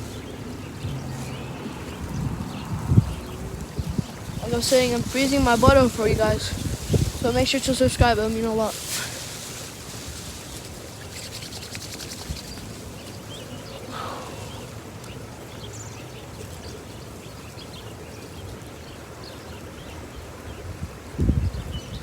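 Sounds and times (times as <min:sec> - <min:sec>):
wind on microphone: 0:00.0 - 0:14.7, 0:20.4 - 0:22.0
small birds chirping: 0:00.0 - 0:22.0.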